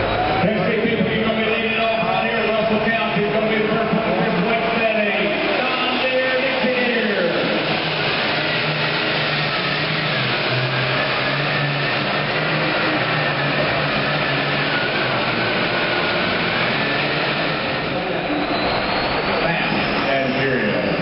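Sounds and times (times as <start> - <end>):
diesel tractor engine running loud: 0.0 - 21.0
high turbo whine: 0.0 - 21.0.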